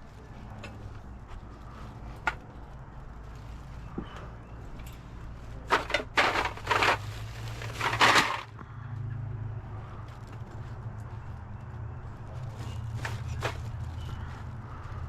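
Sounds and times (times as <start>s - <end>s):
crunching rattling bursts: 5.6s - 8.6s.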